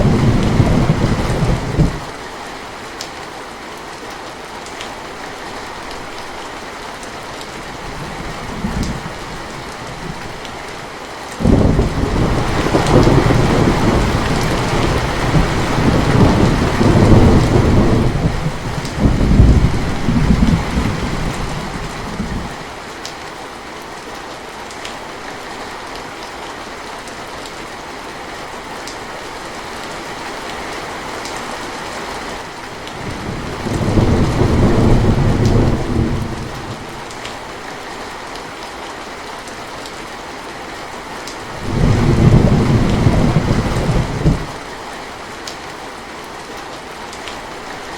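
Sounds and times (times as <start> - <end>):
thunder rumbling: 0.0 - 2.1, 7.8 - 10.7, 11.4 - 22.6, 32.9 - 37.2, 41.5 - 44.6
heavy rain hissing: 0.0 - 22.8, 28.2 - 38.3, 40.4 - 46.0.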